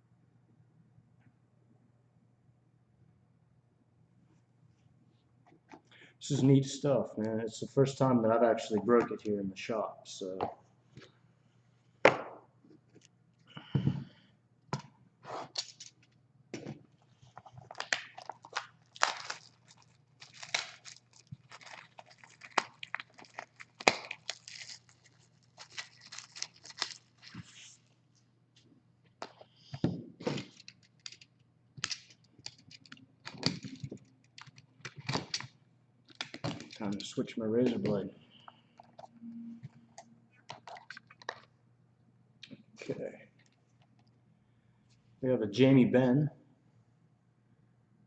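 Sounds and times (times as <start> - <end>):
wrappers crinkling and tearing: 17.2 - 27.8, 30.2 - 35.5, 36.1 - 37.1.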